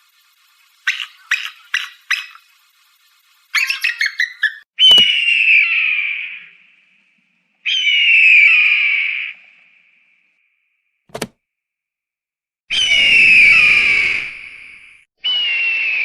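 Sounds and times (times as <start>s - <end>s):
eagle calls: 0.8s - 2.4s, 3.5s - 6.5s.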